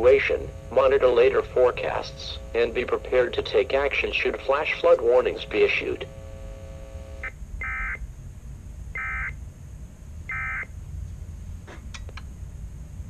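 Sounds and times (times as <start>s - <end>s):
digital data tone bursts: 0.0s - 8.0s, 9.0s - 9.4s, 10.3s - 10.7s
steady tone: 0.0s - 8.1s.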